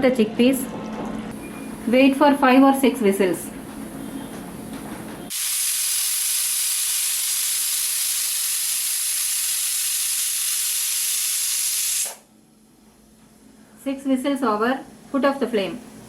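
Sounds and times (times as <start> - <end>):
pressure cooker whistle hissing: 5.3 - 12.2.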